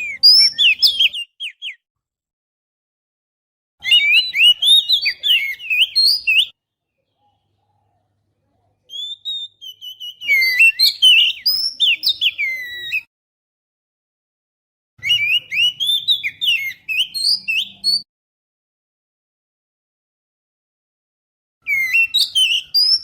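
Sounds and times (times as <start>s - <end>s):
bird whistled song: 0.0s - 1.8s, 3.8s - 6.6s, 8.9s - 13.1s, 15.0s - 18.1s, 21.6s - 23.0s.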